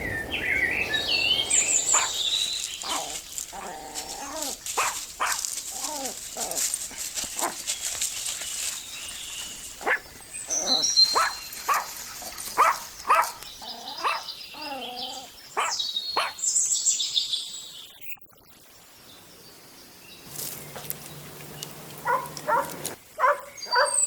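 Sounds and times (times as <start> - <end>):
birds chirping: 0.0 - 18.1, 19.9 - 24.0
dog barking: 1.9 - 2.2, 2.8 - 6.0, 9.8 - 10.1, 10.7 - 11.9, 12.6 - 13.4, 14.0 - 14.3, 15.6 - 16.4, 22.0 - 24.0
dog whining: 2.8 - 4.6.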